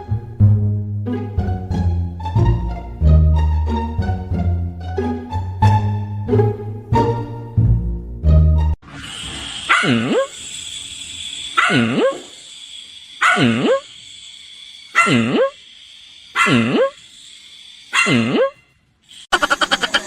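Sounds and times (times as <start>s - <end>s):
dog barking: 9.7s - 10.3s, 11.6s - 12.2s, 13.2s - 13.8s, 15.0s - 15.5s, 16.4s - 16.9s, 17.9s - 18.6s.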